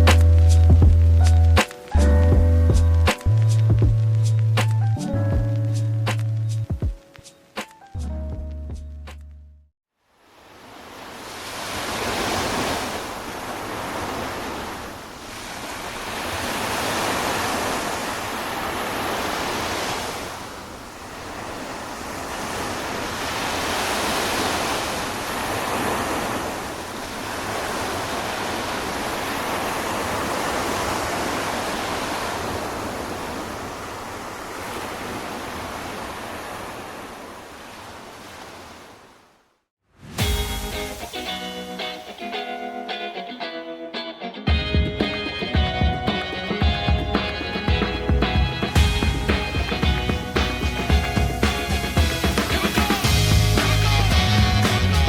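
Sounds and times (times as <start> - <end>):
surf breaking on beach: 10.2 - 39.0, 44.8 - 55.0.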